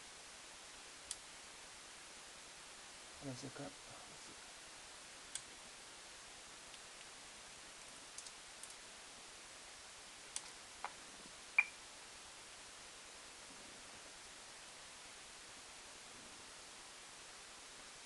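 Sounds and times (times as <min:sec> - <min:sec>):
background hiss: 0:00.0 - 0:18.0
faint clicks: 0:07.8 - 0:08.8.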